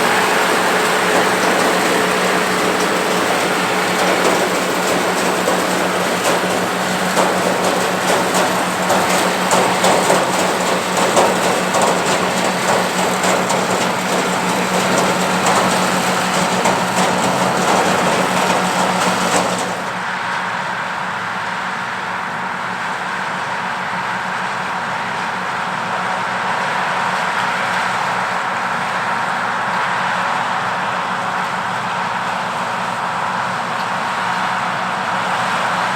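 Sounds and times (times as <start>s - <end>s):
corn picker clattering: 0.0s - 20.1s
tractor engine running under load: 0.0s - 35.9s.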